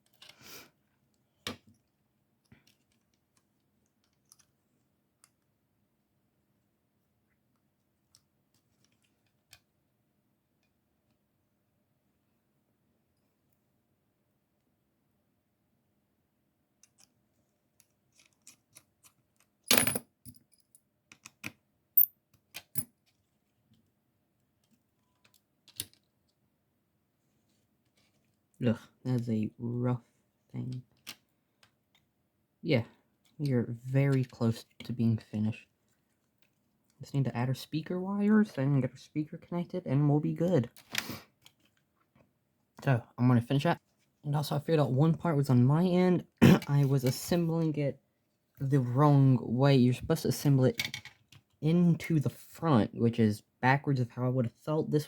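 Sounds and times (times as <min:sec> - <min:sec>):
small plastic parts clicking: 0:01.4 - 0:04.6, 0:16.8 - 0:19.6, 0:21.1 - 0:21.6, 0:24.6 - 0:26.4
plastic parts clicking and tapping: 0:24.6 - 0:26.2.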